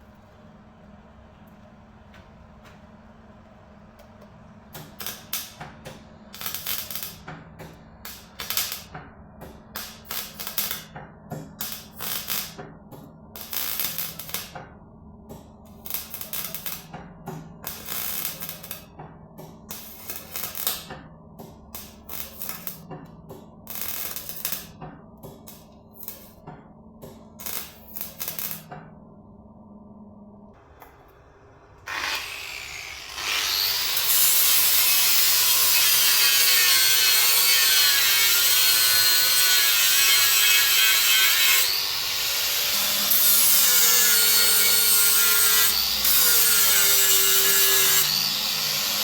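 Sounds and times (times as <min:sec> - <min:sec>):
welding arc crackling: 0:06.3 - 0:07.2, 0:08.0 - 0:08.9, 0:09.8 - 0:10.9, 0:11.6 - 0:12.6, 0:13.4 - 0:14.5, 0:15.7 - 0:16.9, 0:17.6 - 0:18.9, 0:19.7 - 0:20.9, 0:21.8 - 0:22.9, 0:23.7 - 0:24.8, 0:27.4 - 0:28.6.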